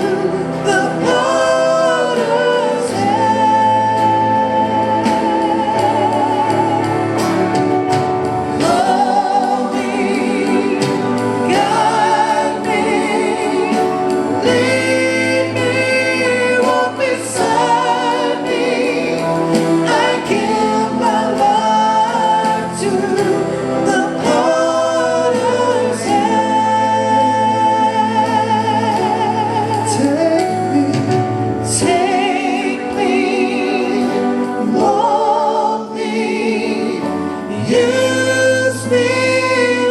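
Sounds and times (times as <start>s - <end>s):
gospel band accompaniment: 0.0s - 39.9s
singers with vibrato: 0.0s - 39.9s
steady drum beat: 0.0s - 39.9s.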